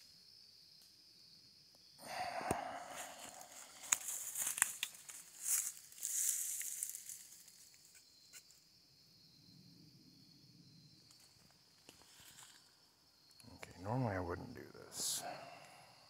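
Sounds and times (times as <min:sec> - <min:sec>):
insect trill: 0:00.0 - 0:16.0
footsteps crunching dry leaves: 0:02.8 - 0:07.7.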